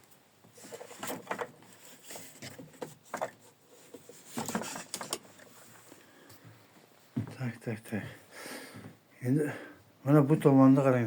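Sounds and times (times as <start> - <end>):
footsteps on wooden floor: 6.4 - 8.1.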